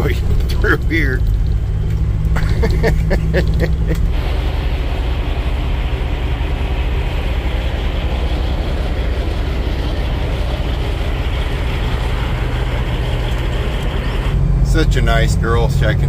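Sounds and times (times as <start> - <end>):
road noise: 0.0 - 16.0
truck diesel engine running: 0.0 - 16.0.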